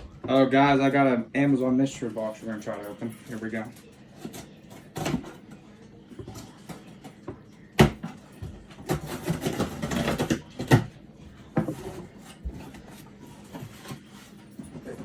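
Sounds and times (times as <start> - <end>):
cardboard rustling: 8.9 - 15.0.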